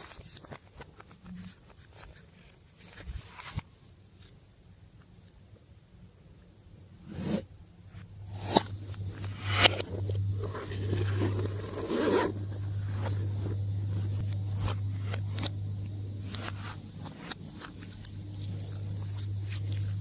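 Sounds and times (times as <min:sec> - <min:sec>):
steady low hum: 0:06.0 - 0:20.0
slime crackling and scraping: 0:16.2 - 0:20.0.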